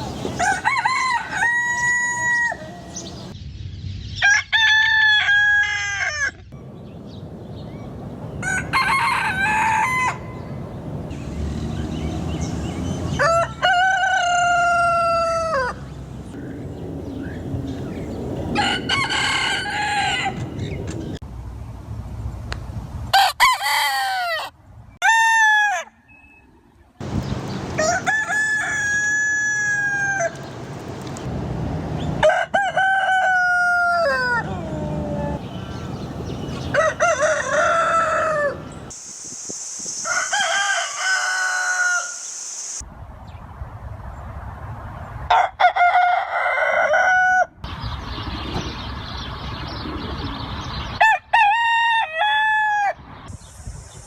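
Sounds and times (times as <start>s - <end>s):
roosters crowing: 0.0s - 3.3s, 4.2s - 6.5s, 8.3s - 10.6s, 11.5s - 16.0s, 18.4s - 20.8s, 23.1s - 26.0s, 27.5s - 30.5s, 32.2s - 39.0s, 40.0s - 42.8s, 45.3s - 47.6s, 51.0s - 53.0s.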